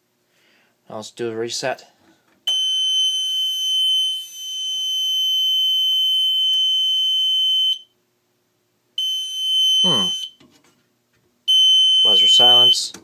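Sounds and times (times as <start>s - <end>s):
fire alarm high tone: 2.5s - 7.9s, 9.0s - 10.4s, 11.5s - 12.9s.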